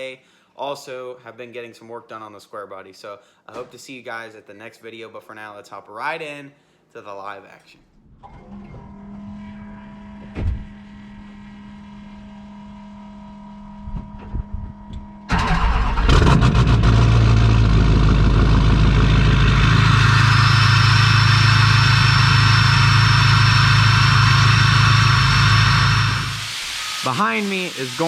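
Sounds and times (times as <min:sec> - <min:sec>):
low steady hum: 0:07.8 - 0:26.7
engine running loud: 0:09.6 - 0:26.7.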